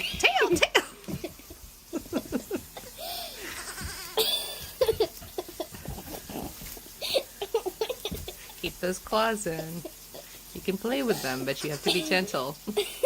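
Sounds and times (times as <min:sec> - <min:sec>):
baby goats bleating: 0:03.2 - 0:08.4.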